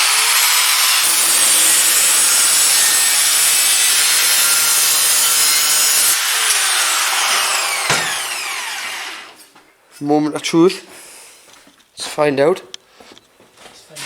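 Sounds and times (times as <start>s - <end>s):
angle grinder cutting steel: 0.0s - 9.5s.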